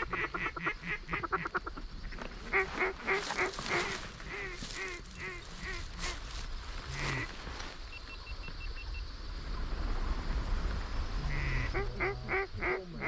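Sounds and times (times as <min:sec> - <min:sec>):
duck quacking: 0:02.5 - 0:06.2, 0:06.9 - 0:07.4, 0:11.3 - 0:13.0.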